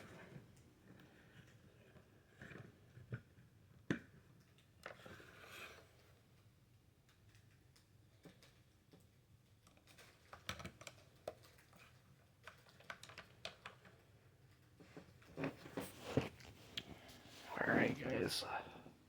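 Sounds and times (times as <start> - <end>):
plastic parts clicking and tapping: 9.6 - 15.1.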